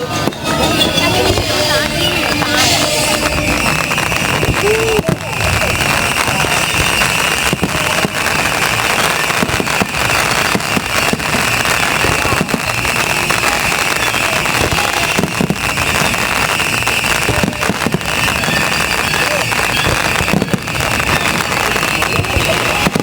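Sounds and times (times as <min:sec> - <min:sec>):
fireworks crackling and banging: 0:00.0 - 0:23.0.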